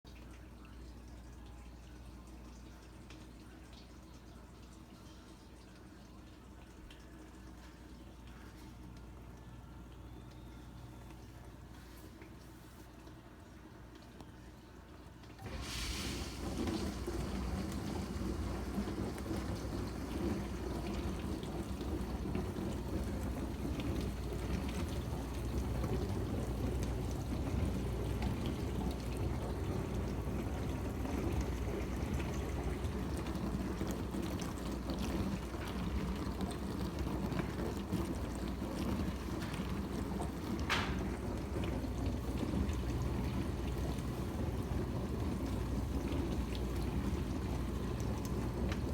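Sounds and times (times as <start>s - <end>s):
dishwasher pump hum: 4.6s - 48.9s
dishwasher water spraying: 15.4s - 35.8s.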